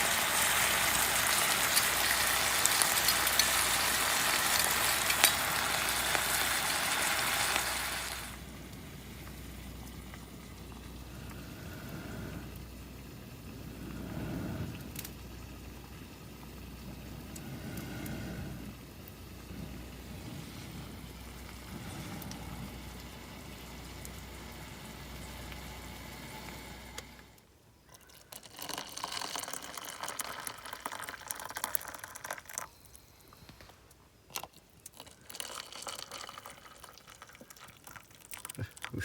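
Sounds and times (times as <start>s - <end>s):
low steady hum: 0.0s - 28.1s
water bubbling and pouring: 34.3s - 39.0s.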